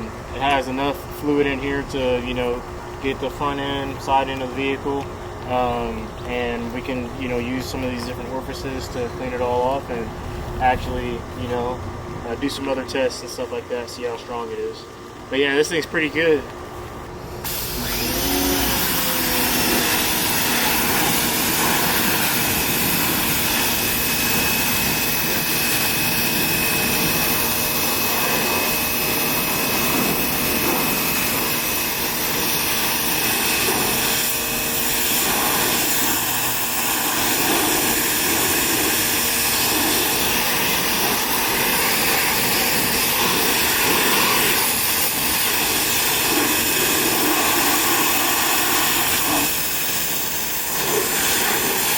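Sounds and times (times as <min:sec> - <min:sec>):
motor and pump whine: 0:00.0 - 0:51.9
pressure washer spray hissing: 0:17.4 - 0:51.9.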